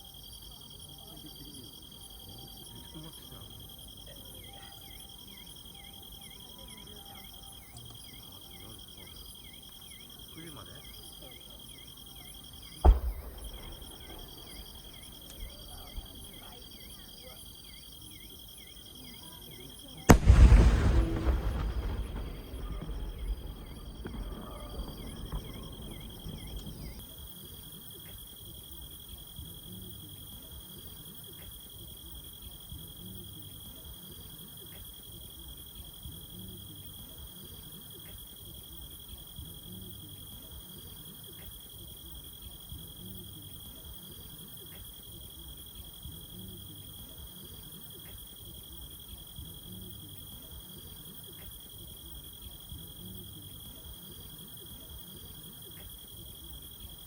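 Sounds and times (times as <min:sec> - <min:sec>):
insects trilling: 0:00.0 - 0:57.0
crowd noise: 0:10.1 - 0:17.4, 0:19.0 - 0:27.0
fireworks crackling: 0:12.6 - 0:17.3, 0:20.1 - 0:27.0.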